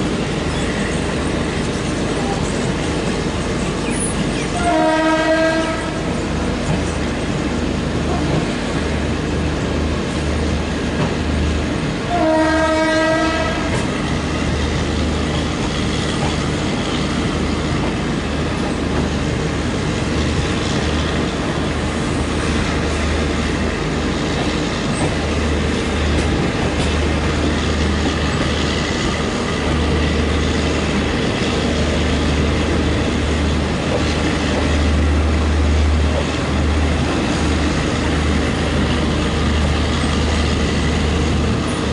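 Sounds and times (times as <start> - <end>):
train horn: 4.5 - 6.1, 12.0 - 13.9
train wheels clattering: 24.2 - 41.9.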